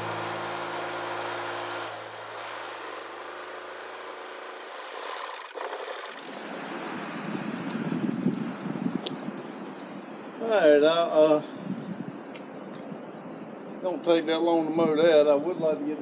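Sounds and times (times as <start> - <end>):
riding lawn mower engine: 0.0 - 7.0.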